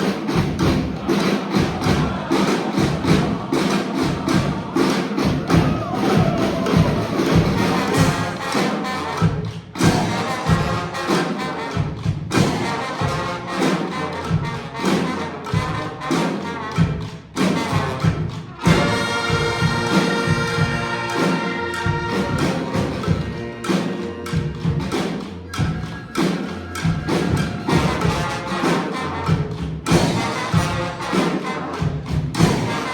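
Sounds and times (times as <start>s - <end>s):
drum strokes: 0.0s - 32.9s
street band horns playing: 0.0s - 32.9s.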